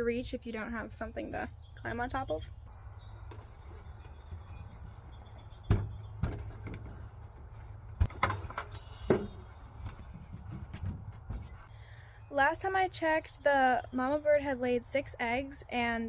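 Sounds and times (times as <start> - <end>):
ladder knocks and clunks: 5.6 - 11.6.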